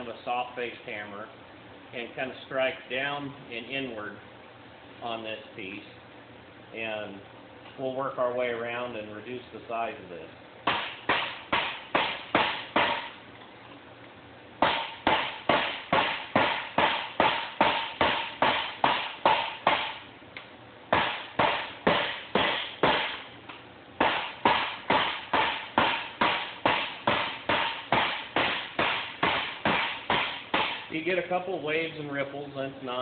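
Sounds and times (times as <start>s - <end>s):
hammer striking steel tube: 10.7s - 13.2s, 14.6s - 20.0s, 20.9s - 23.3s, 24.0s - 30.9s.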